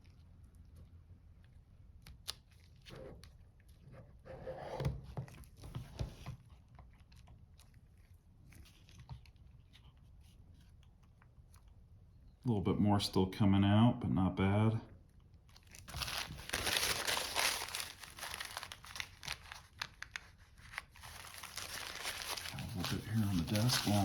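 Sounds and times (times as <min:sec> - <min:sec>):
rubber grip rubbing and rustling: 0:15.7 - 0:24.0.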